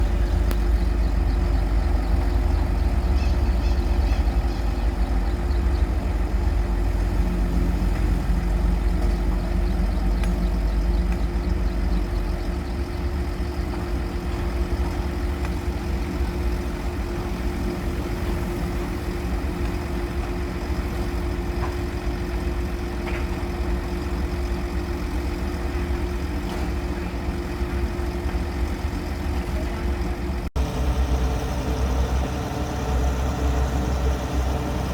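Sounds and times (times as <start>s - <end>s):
heavy vehicle engine idling: 0.0s - 34.9s.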